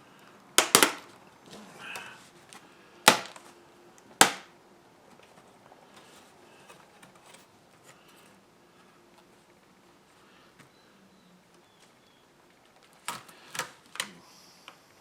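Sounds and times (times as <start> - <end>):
sharp plastic snaps: 0.6 - 1.1, 3.1 - 3.5, 4.2 - 4.5.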